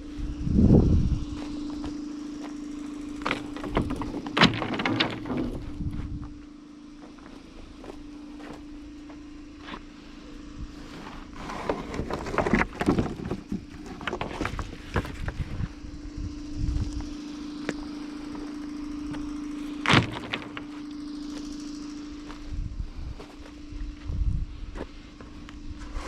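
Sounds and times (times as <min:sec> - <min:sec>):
small engine running: 0:00.0 - 0:26.0
knocks and clatters: 0:03.2 - 0:05.6.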